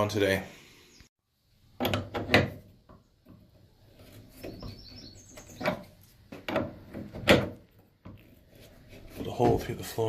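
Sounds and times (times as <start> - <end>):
high bird chirps: 4.3 - 5.8.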